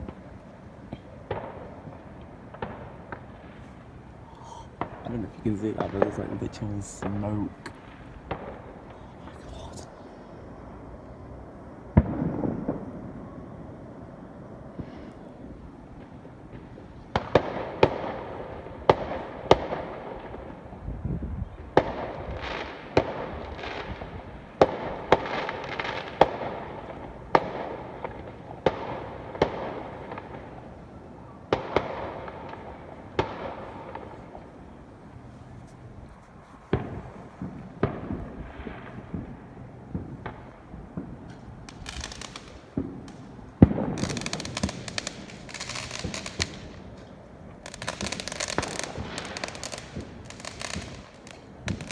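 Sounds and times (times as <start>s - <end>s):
fireworks crackling: 2.4s - 11.4s, 31.5s - 51.9s
fireworks bangs: 2.5s - 10.9s, 11.9s - 13.2s, 36.6s - 51.9s.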